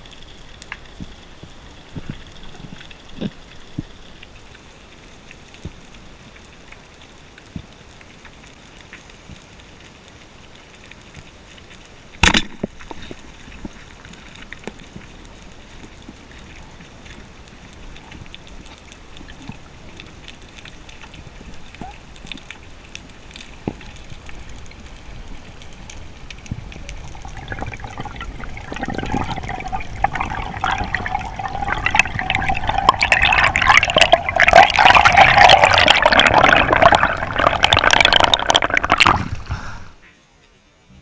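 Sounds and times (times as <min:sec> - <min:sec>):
water gurgling and rushing: 0:13.5 - 0:39.6.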